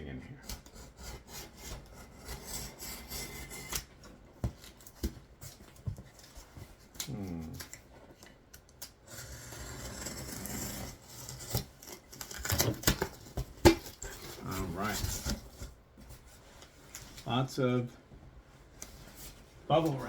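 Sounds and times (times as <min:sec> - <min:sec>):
box cutter scraping cardboard: 0:00.4 - 0:03.9, 0:09.1 - 0:15.7
cardboard box rustling: 0:10.9 - 0:16.5
cardboard flaps clicking and knocking: 0:12.2 - 0:14.4.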